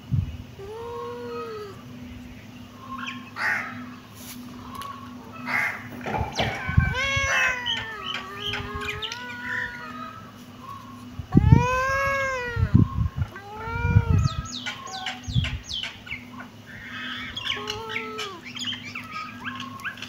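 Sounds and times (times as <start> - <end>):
kittens meowing: 5.5 - 10.3, 11.3 - 15.3, 16.7 - 19.9.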